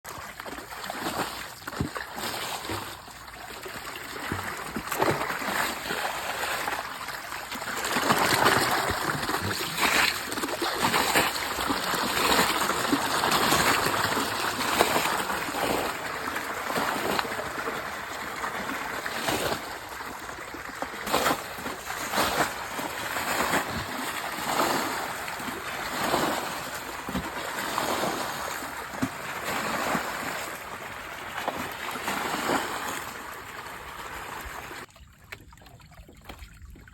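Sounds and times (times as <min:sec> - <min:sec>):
stream water running: 0:00.1 - 0:36.9
water splashes: 0:00.1 - 0:36.9.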